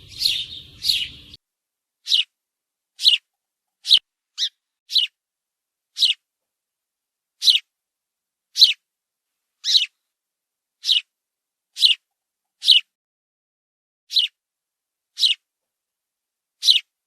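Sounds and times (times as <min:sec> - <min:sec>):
sparrow chirping: 0:00.0 - 0:01.4, 0:02.0 - 0:02.3, 0:03.0 - 0:05.2, 0:05.9 - 0:06.2, 0:07.4 - 0:07.7, 0:08.5 - 0:08.8, 0:09.6 - 0:10.0, 0:10.8 - 0:11.1, 0:11.8 - 0:12.0, 0:12.6 - 0:12.9, 0:14.1 - 0:14.4, 0:15.2 - 0:15.4, 0:16.6 - 0:16.9.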